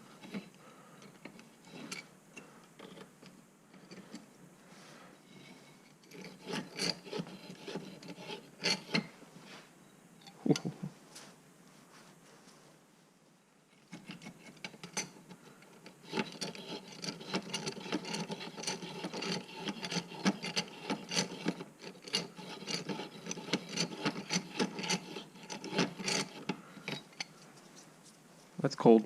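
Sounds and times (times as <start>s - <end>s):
metal scraping on pipe wrench: 0.0s - 4.2s, 5.3s - 9.1s, 13.8s - 27.8s.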